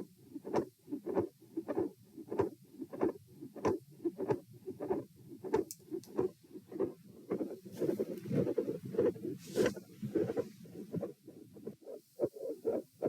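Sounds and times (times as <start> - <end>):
heartbeat through stethoscope: 0.0 - 13.0
chest piece scratches: 0.4 - 12.8.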